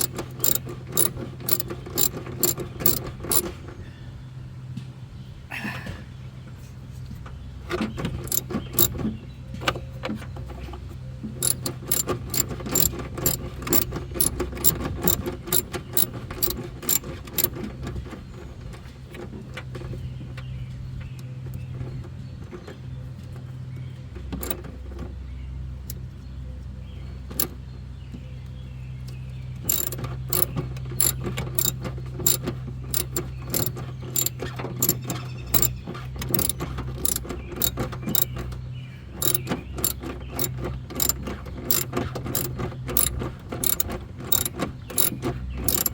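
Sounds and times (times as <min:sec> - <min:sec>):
hand tools clicking: 0:00.0 - 0:03.6, 0:08.2 - 0:09.0, 0:11.4 - 0:17.8, 0:24.4 - 0:24.7, 0:29.6 - 0:38.6, 0:39.2 - 0:45.9
steady low hum: 0:00.0 - 0:17.8.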